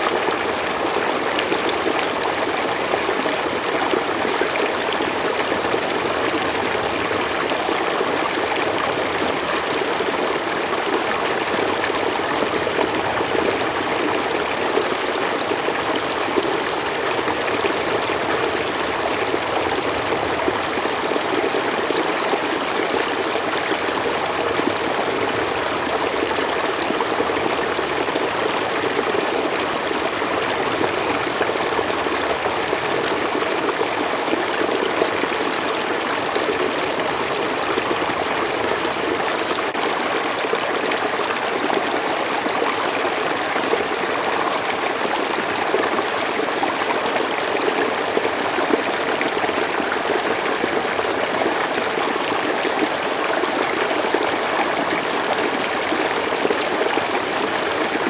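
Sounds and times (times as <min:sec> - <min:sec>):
water rushing over rocks: 0:00.0 - 0:58.0.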